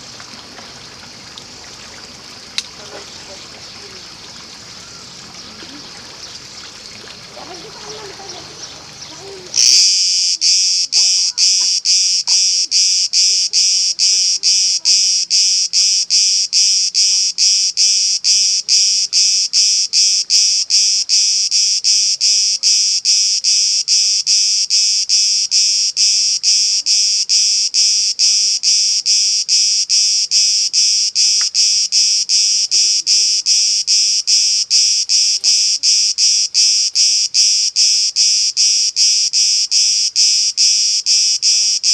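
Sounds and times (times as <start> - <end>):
cicada buzzing shrilly: 7.4 - 41.9.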